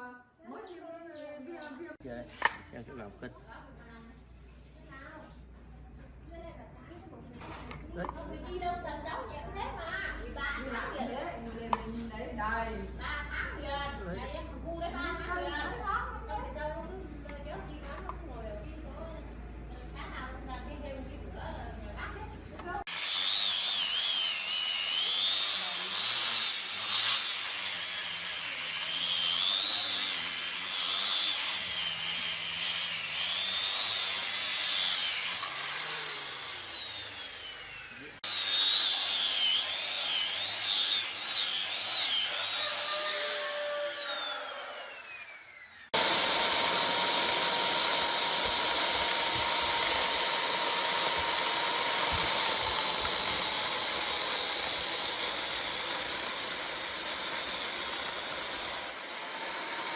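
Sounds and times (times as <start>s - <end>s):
power tool high whine: 22.9s - 59.9s.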